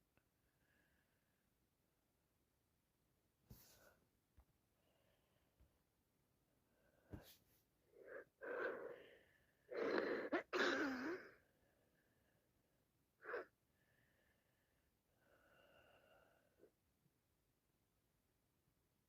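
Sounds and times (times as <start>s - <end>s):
sharp sniff: 3.5s - 4.0s.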